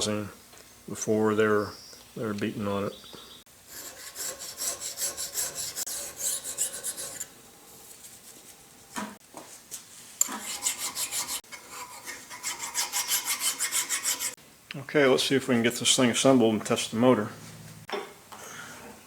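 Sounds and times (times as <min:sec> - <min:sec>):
rasping strokes on metal: 0:03.7 - 0:07.3, 0:10.2 - 0:14.4.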